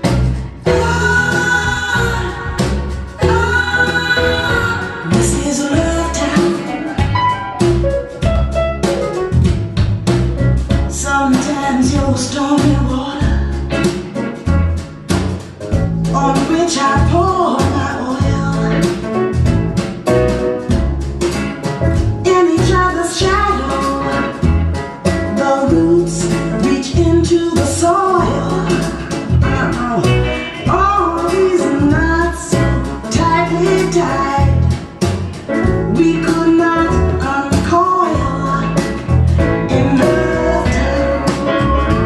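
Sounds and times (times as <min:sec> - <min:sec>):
person singing: 0:00.0 - 0:07.5, 0:10.9 - 0:13.7, 0:16.0 - 0:19.2, 0:22.2 - 0:24.5, 0:25.3 - 0:42.0
bass and guitar: 0:00.0 - 0:42.0
drum beat: 0:02.6 - 0:11.0.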